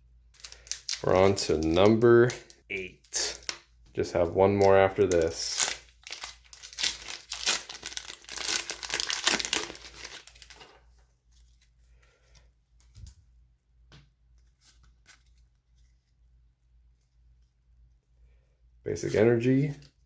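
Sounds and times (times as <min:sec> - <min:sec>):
foil wrapper tearing and crinkling: 0:00.4 - 0:03.6, 0:04.9 - 0:10.7.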